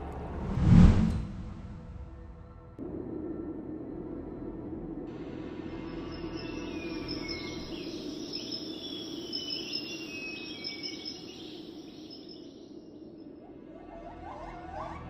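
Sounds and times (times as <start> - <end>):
insects trilling: 5.2 - 14.0
birds whistling: 5.9 - 15.0.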